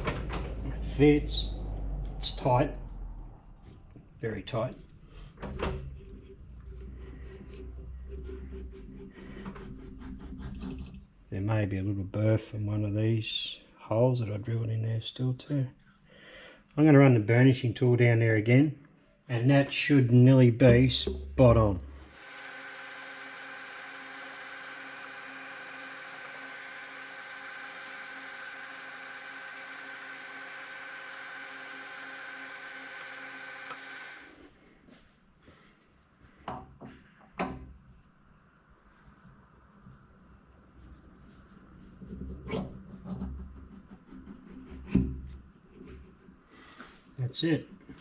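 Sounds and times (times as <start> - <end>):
metal lathe gear whine: 22.1 - 34.4.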